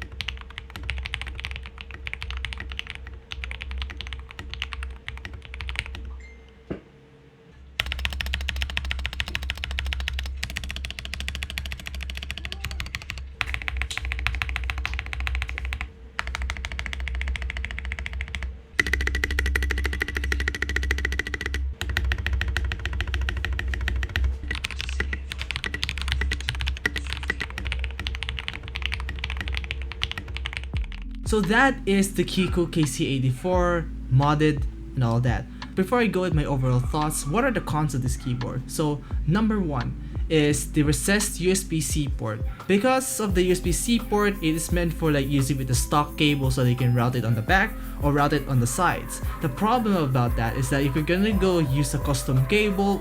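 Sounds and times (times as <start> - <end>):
fast mechanical keyboard typing: 0.0 - 6.1, 7.8 - 31.3.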